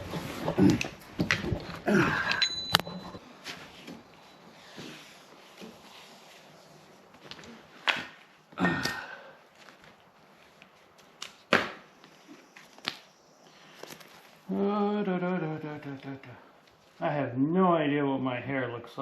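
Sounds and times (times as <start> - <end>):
strap scraping rustle: 3.2 - 8.4, 9.5 - 14.5.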